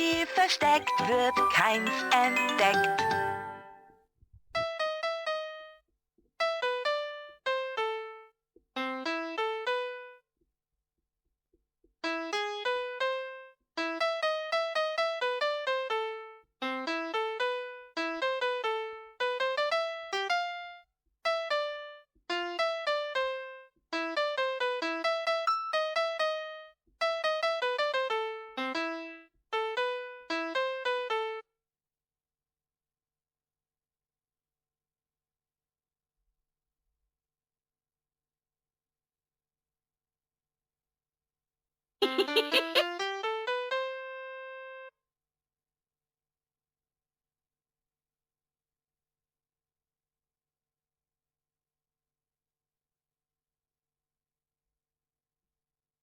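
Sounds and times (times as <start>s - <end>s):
toy playing children's melody: 0.0s - 3.8s.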